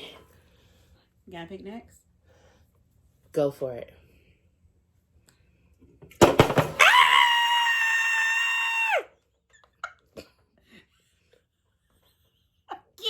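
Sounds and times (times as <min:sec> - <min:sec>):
loud crackling knocks: 0:06.2 - 0:06.8
person screaming high-pitched: 0:06.8 - 0:09.0.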